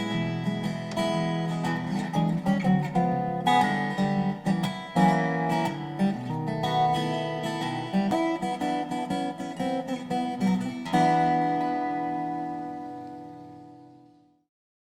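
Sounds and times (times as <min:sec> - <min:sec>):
strummed acoustic guitar: 0:00.0 - 0:14.4.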